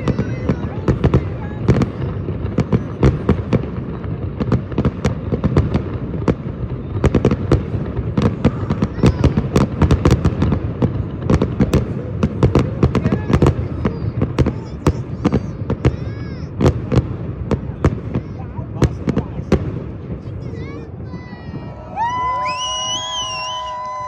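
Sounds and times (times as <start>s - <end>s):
distant fireworks bursts: 0.0s - 24.0s
fireworks bangs and cracks: 0.0s - 24.0s.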